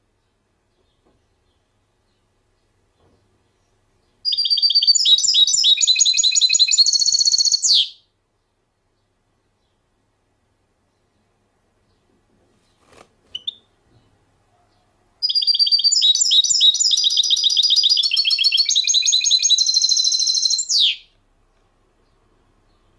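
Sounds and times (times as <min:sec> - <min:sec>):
songbird chirps: 0:00.0 - 0:22.9
songbird trilling song: 0:03.4 - 0:08.1, 0:13.4 - 0:14.2, 0:15.2 - 0:22.9.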